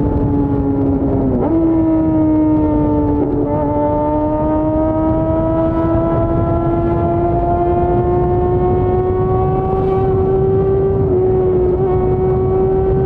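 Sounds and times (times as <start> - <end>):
motorcycle engine at high revs: 0.0 - 13.0
wind and road noise: 0.0 - 13.0.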